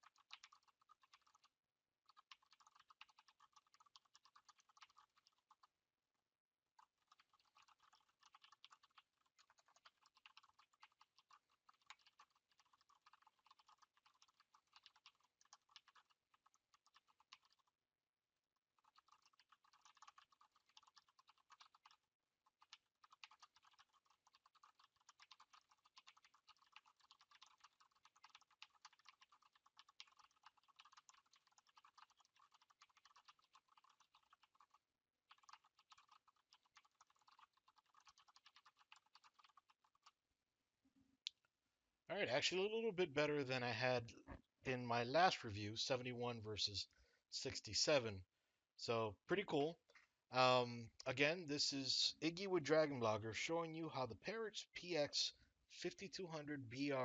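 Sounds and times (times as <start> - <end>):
fast mechanical keyboard typing: 0.0 - 1.4, 2.1 - 5.7, 6.8 - 17.7, 18.8 - 22.0, 22.6 - 40.1.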